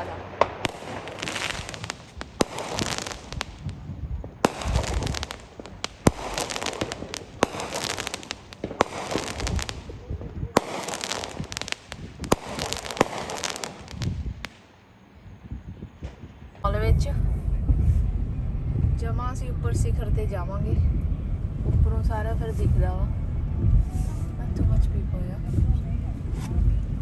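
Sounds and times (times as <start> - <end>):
firecracker crackling: 0.0 - 14.8
firework bangs: 0.0 - 14.8.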